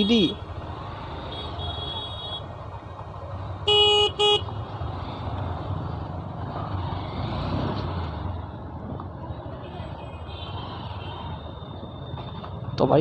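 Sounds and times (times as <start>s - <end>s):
traffic rumble: 0.0s - 13.0s
vehicle horn blasts: 3.7s - 4.5s.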